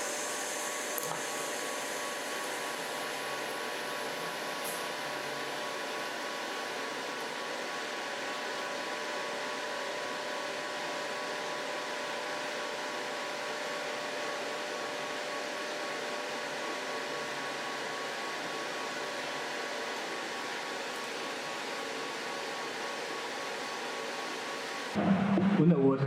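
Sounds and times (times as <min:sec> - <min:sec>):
pump and fan whirring: 0:00.0 - 0:25.9
steady tones: 0:25.0 - 0:26.0.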